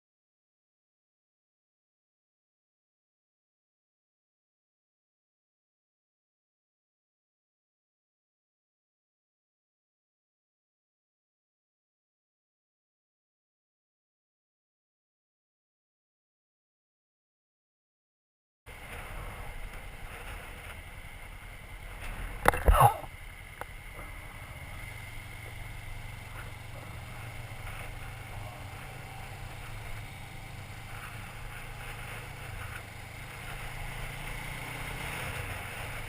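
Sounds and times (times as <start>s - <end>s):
person sneezing: 22.5s - 23.1s.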